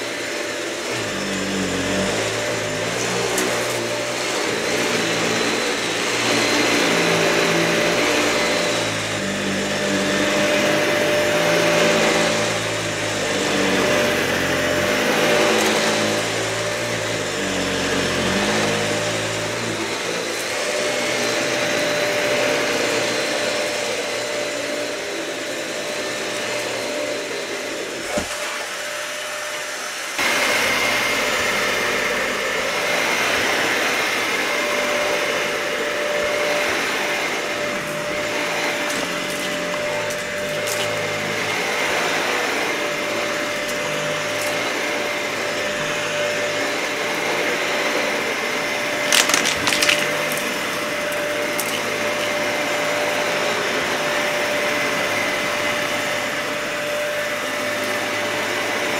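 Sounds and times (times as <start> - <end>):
vacuum cleaner running: 0.0 - 58.9.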